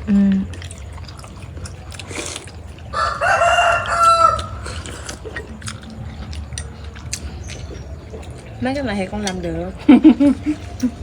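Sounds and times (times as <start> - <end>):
rooster crowing: 2.9 - 4.9.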